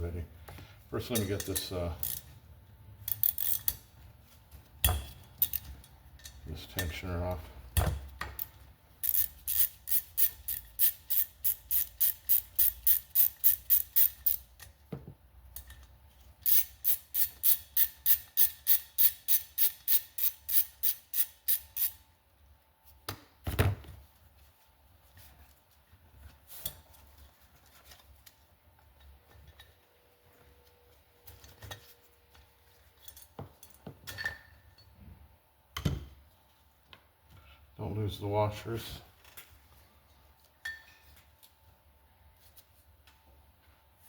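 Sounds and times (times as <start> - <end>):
socket ratchet clicking: 3.1 - 3.8, 8.4 - 14.7, 16.4 - 22.0.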